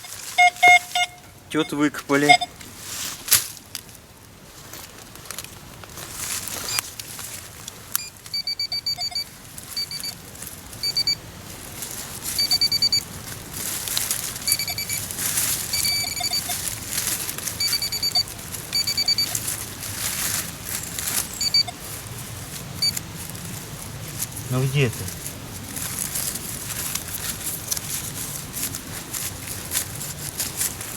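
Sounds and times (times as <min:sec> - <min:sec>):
pinpointer high short beeps: 0:00.0 - 0:02.6, 0:08.0 - 0:10.2, 0:10.8 - 0:11.2, 0:12.4 - 0:13.1, 0:14.4 - 0:15.1, 0:15.7 - 0:16.6, 0:17.6 - 0:19.4, 0:21.3 - 0:21.8, 0:22.8 - 0:23.0
soil scraping and rustling: 0:00.0 - 0:30.9.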